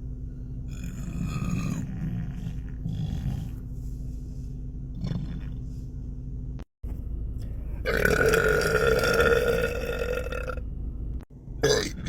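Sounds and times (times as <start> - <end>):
man belching: 7.9 - 10.6, 11.6 - 12.0.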